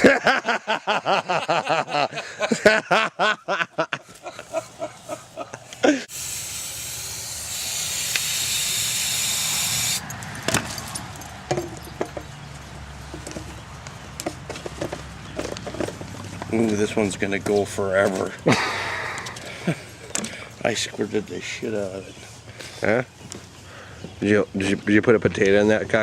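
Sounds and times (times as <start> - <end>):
aerosol can hissing: 6.1 - 10.0.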